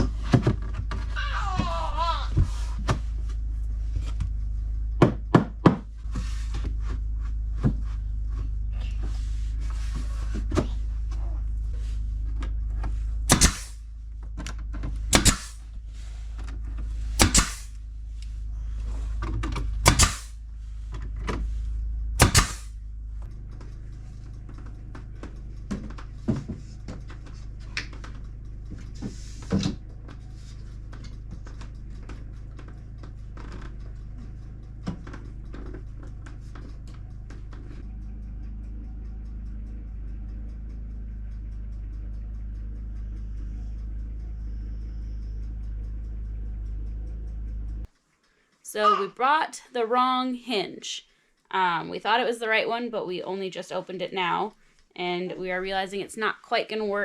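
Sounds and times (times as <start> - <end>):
steady low hum: 0.0 - 57.0
nails hammered into wood boards: 13.3 - 13.8, 15.1 - 15.6, 17.2 - 17.7, 19.8 - 20.3, 22.2 - 22.7.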